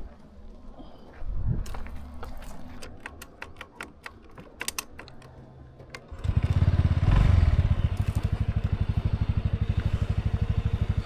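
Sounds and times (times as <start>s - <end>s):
scooter engine throttling up: 6.1s - 11.0s.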